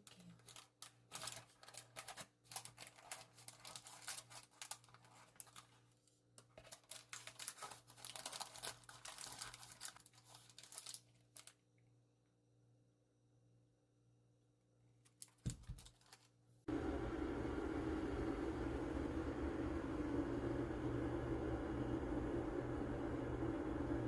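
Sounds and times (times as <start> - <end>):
material crinkling and rustling: 0.0 - 11.6, 15.1 - 16.4.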